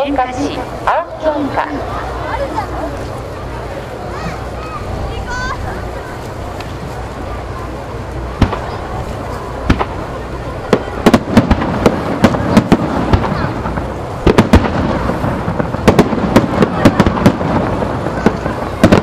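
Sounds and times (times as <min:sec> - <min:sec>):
fireworks rumble: 0:00.0 - 0:19.0
fireworks shells bursting: 0:08.4 - 0:19.0.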